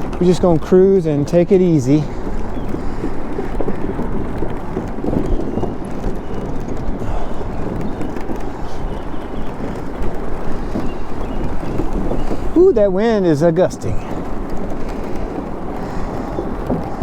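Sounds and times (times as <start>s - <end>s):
wind gusting over microphone: 0.0s - 17.0s.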